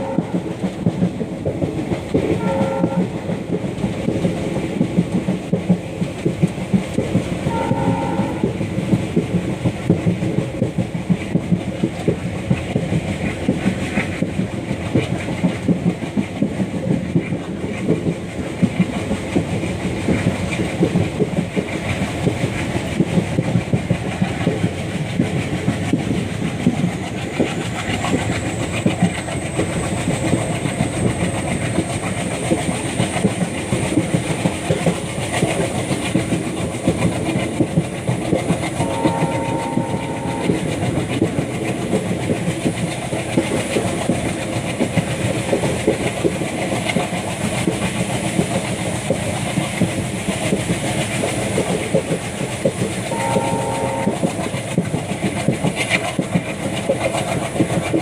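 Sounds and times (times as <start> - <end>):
diesel locomotive chugging: 0.0 - 58.0
wheels clattering over rails: 0.0 - 58.0
locomotive horn blast: 2.4 - 3.1, 7.5 - 8.6, 38.8 - 40.8, 53.1 - 54.4.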